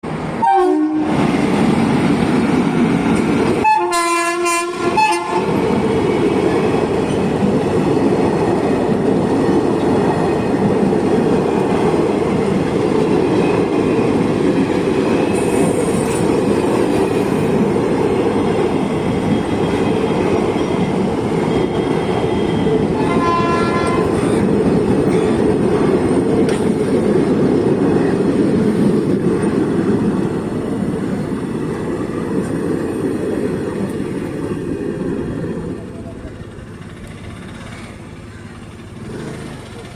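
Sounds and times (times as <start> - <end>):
train rumbling and clattering: 0.0 - 39.9
train horn: 0.4 - 1.2, 3.6 - 5.6, 22.9 - 24.4.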